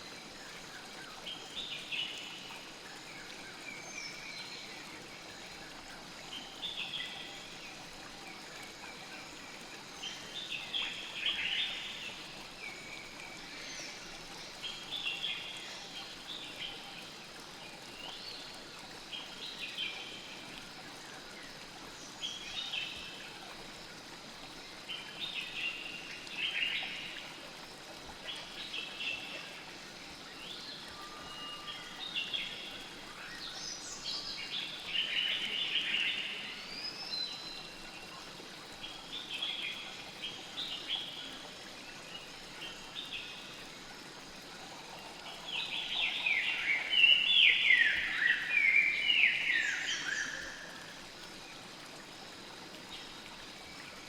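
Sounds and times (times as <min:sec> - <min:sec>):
river water flowing: 0:00.0 - 0:54.0.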